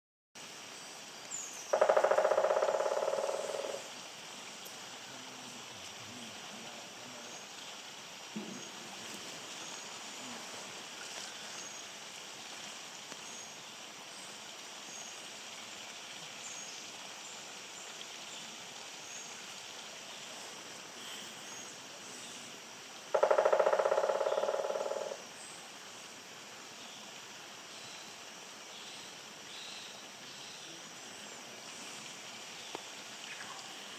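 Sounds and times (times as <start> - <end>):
faint steady hiss: 0.4 - 33.9
woodpecker drumming on wood: 1.7 - 3.8, 23.1 - 25.2.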